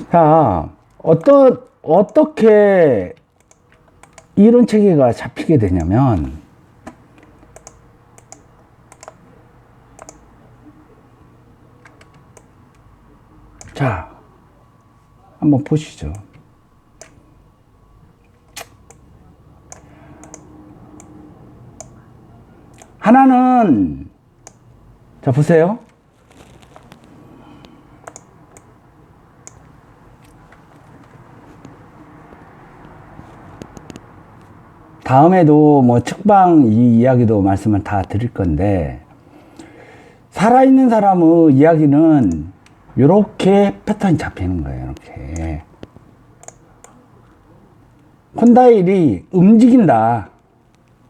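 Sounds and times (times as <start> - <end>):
faint steady hum: 0.0 - 51.0
computer mouse clicks: 3.2 - 4.4, 6.8 - 9.2, 10.0 - 10.3, 11.8 - 12.8, 13.6 - 13.8, 17.0 - 17.2, 18.5 - 19.1, 19.7 - 21.2, 21.8 - 22.0, 24.4 - 24.6, 26.3 - 28.7, 29.4 - 33.0, 33.6 - 34.5, 45.3 - 47.4.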